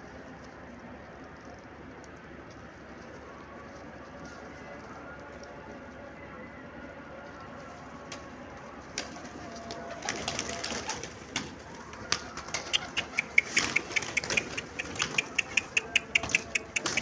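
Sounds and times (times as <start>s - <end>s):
short sharp ticks: 12.6s - 17.0s.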